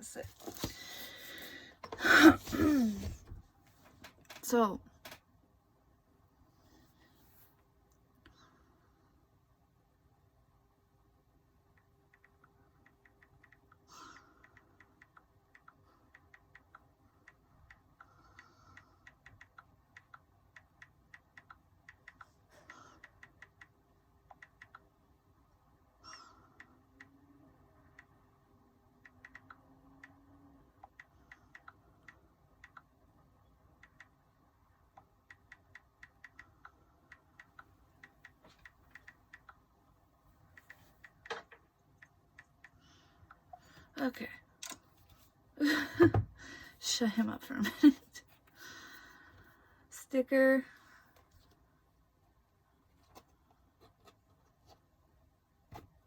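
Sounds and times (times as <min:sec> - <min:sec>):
rapid light clicks and taps: 0:11.7 - 0:25.0, 0:33.7 - 0:39.7, 0:40.4 - 0:43.9.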